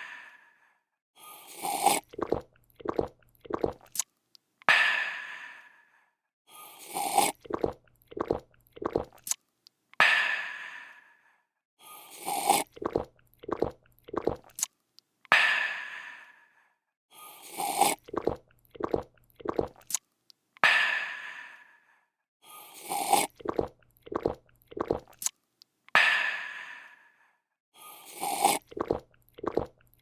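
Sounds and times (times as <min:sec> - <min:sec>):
person slurping and gulping drink: 0:01.2 - 0:04.1, 0:06.6 - 0:09.4, 0:11.9 - 0:14.7, 0:17.2 - 0:20.0, 0:22.6 - 0:25.4, 0:27.9 - 0:30.0.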